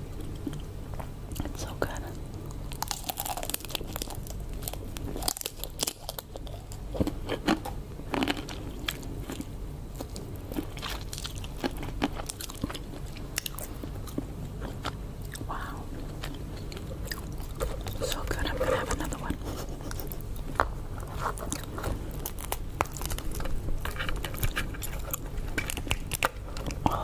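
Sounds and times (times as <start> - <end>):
crunchy chewing: 0.0 - 27.0.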